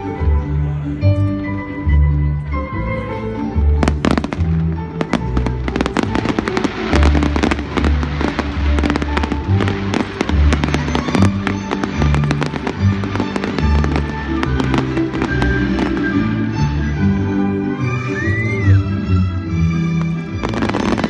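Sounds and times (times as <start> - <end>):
fireworks banging: 3.8 - 16.4, 20.0 - 21.0.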